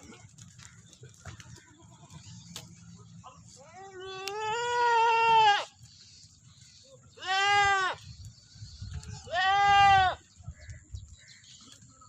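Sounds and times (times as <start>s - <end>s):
goats bleating: 3.6s - 5.8s, 7.2s - 8.1s, 9.2s - 10.3s.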